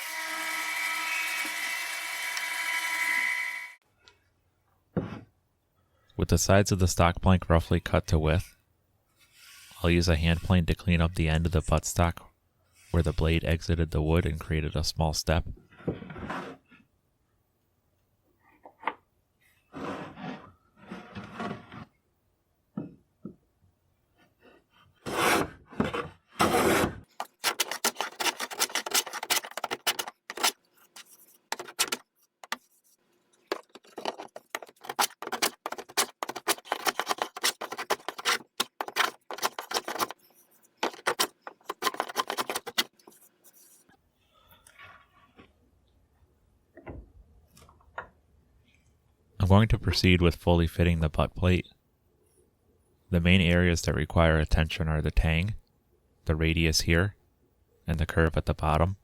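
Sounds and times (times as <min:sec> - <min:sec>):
hand plane shaving wood: 0:25.0 - 0:32.7, 0:33.5 - 0:40.2.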